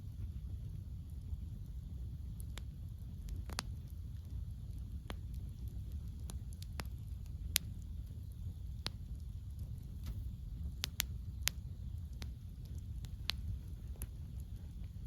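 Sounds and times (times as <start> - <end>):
campfire crackling and popping: 0.0 - 15.0
steady low rumble: 0.0 - 15.0.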